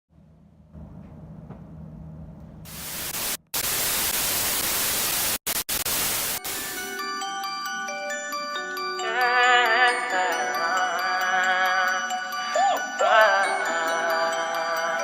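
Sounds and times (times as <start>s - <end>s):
loud static hiss: 2.7s - 6.9s.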